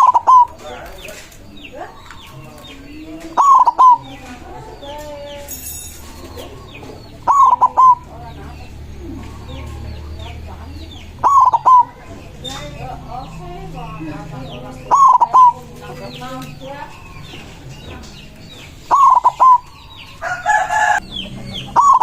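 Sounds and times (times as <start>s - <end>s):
dove cooing: 0.0s - 22.0s
small birds chirping: 0.0s - 22.0s.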